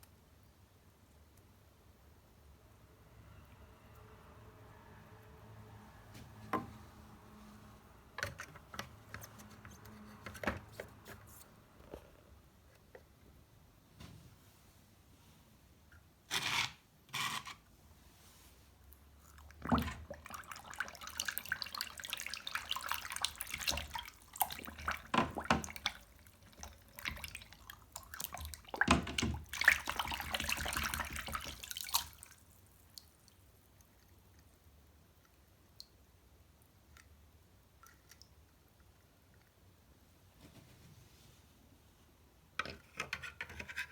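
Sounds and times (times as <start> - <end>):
water running and splashing: 19.4 - 33.3.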